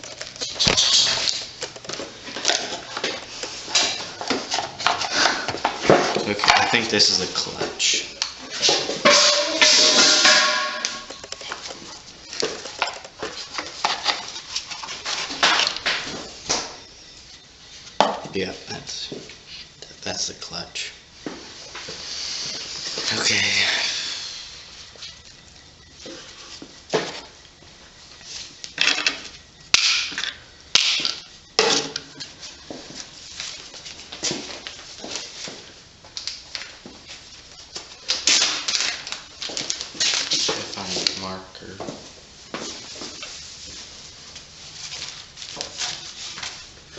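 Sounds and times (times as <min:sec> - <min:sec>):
metal ringing squeal: 0:09.0 - 0:11.2
metal parts and tools clanking: 0:09.0 - 0:11.5.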